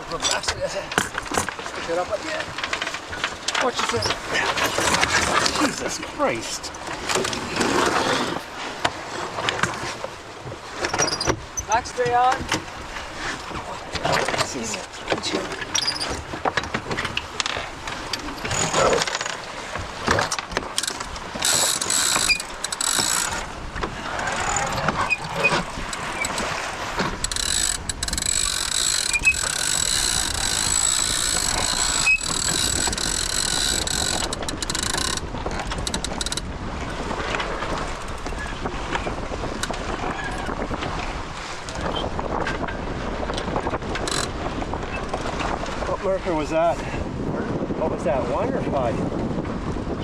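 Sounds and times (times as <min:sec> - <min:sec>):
winch ratcheting: 0:13.9 - 0:19.4, 0:20.0 - 0:36.4, 0:43.3 - 0:44.3.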